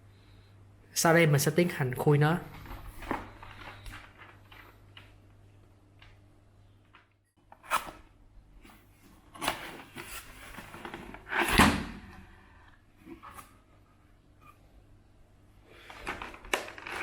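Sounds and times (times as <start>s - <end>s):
box scraping and rustling: 9.3s - 11.6s.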